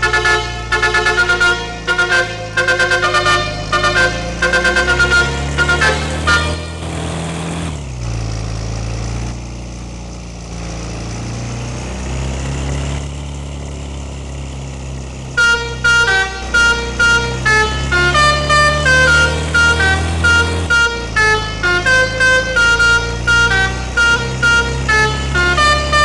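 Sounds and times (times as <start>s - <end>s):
multi-tone air horn tune: 0.0s - 7.2s, 15.4s - 26.0s
bus engine humming: 0.0s - 26.0s.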